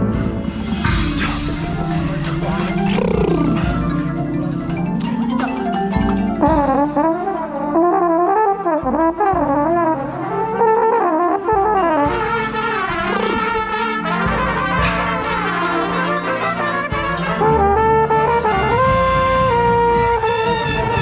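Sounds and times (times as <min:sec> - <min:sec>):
brass chords: 0:00.0 - 0:21.0
marimba strikes: 0:00.2 - 0:07.3
wavering melody line: 0:00.4 - 0:07.2.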